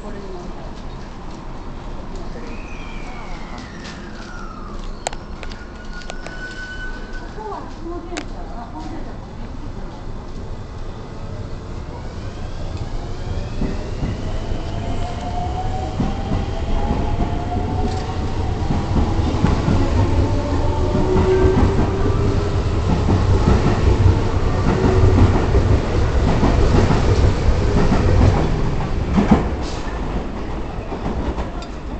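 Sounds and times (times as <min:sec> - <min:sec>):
train rumble: 0:00.0 - 0:31.9.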